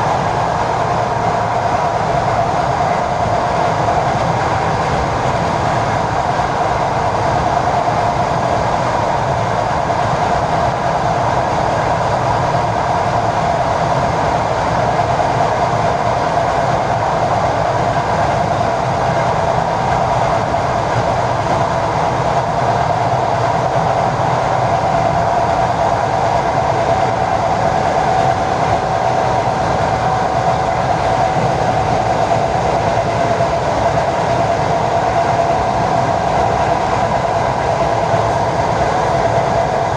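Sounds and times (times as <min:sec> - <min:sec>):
electric train whine: 0:00.0 - 0:39.9
wheels rumbling on rails: 0:00.0 - 0:39.9.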